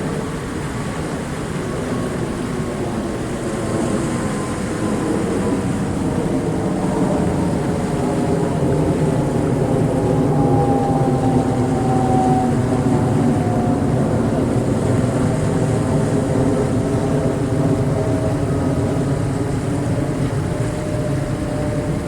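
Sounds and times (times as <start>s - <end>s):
constant rushing noise: 0.0s - 22.0s
low engine-like drone: 0.0s - 22.0s
falling faint tone: 9.6s - 15.2s.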